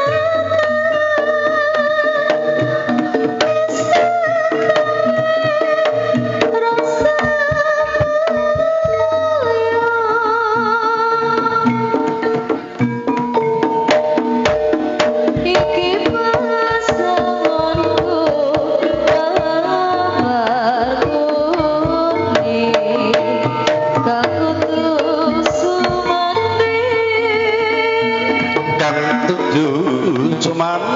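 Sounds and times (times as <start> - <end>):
wavering melody line: 0.0 - 30.9
hand drum strokes: 11.5 - 30.9.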